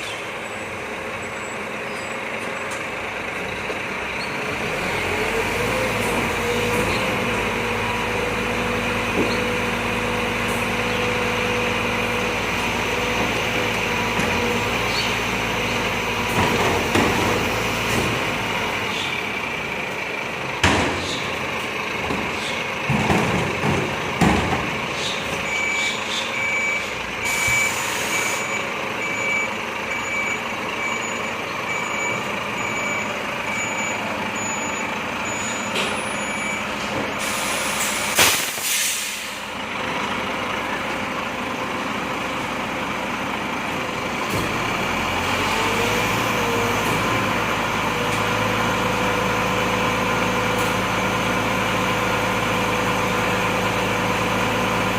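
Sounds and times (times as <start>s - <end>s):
truck engine running: 0.0s - 54.9s
reversing alarm beeps: 25.4s - 36.9s
air brake hiss: 27.3s - 28.5s, 37.2s - 39.5s.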